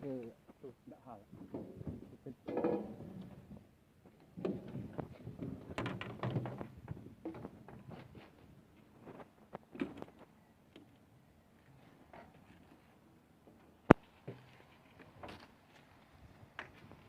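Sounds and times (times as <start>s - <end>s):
metal knocks and clunks: 1.4s - 3.6s, 4.2s - 8.3s.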